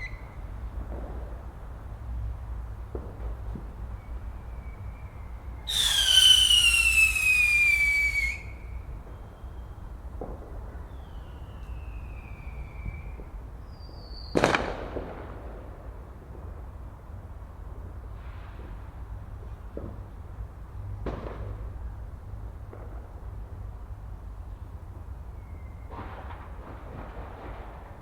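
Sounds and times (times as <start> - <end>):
whistling firework: 0.0 - 15.4, 25.3 - 28.0
firework bang: 5.7 - 9.2.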